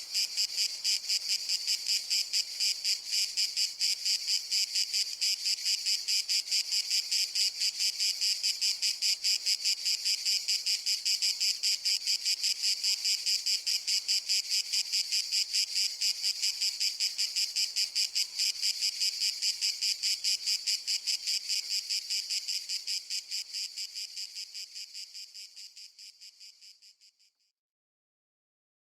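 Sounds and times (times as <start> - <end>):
cicada buzzing: 0.1 - 27.2.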